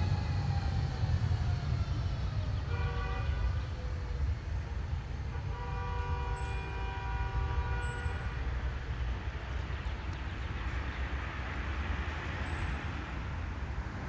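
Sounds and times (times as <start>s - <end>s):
horn blasts: 2.7s - 3.6s, 5.3s - 8.5s.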